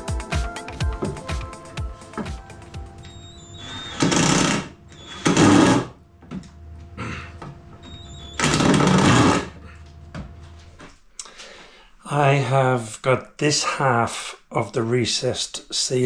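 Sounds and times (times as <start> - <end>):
power tool bursts: 3.6 - 6.0, 8.4 - 9.5.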